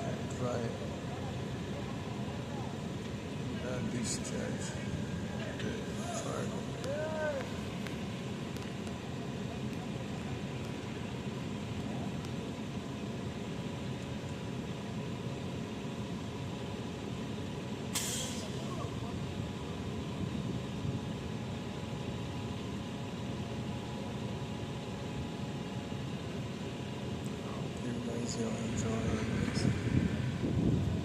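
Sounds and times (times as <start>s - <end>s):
diesel truck engine running: 0.0s - 31.0s
air brake hiss: 17.9s - 18.6s.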